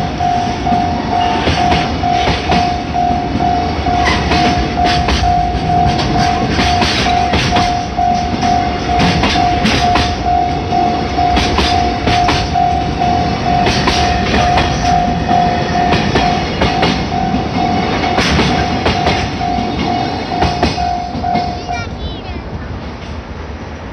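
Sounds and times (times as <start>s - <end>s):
crossing warning bell ringing: 0.0s - 22.2s
train wagons rumbling: 0.0s - 23.9s
wheel clacks over rail joints: 0.7s - 21.6s.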